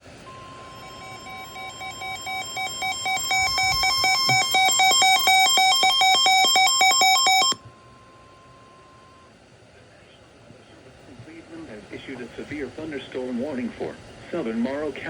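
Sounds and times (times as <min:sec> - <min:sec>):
steady warning alarm tone: 0:00.1 - 0:09.3
electronic alarm beeps: 0:00.3 - 0:09.3.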